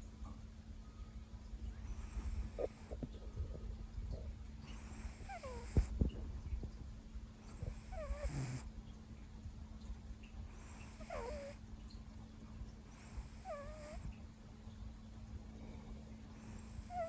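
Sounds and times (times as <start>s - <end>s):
cat snoring: 1.9s - 3.1s, 4.7s - 6.0s, 7.4s - 8.7s, 10.5s - 11.6s, 12.9s - 14.1s, 16.4s - 17.0s.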